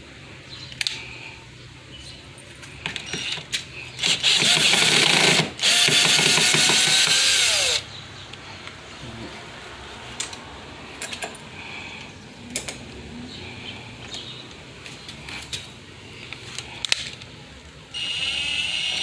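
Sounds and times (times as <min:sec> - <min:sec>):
power drill driving a screw: 0:04.0 - 0:07.8, 0:18.0 - 0:19.0.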